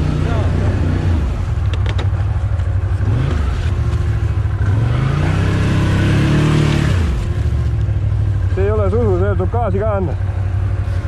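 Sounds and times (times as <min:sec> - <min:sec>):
atv engine revving: 0:00.0 - 0:11.0.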